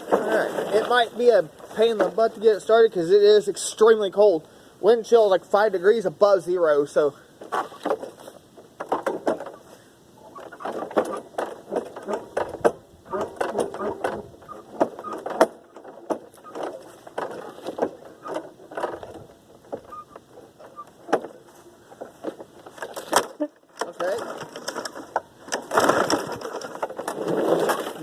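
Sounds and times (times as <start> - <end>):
mower recoil starter rattling pulls: 10.4 - 21.4, 22.0 - 28.0.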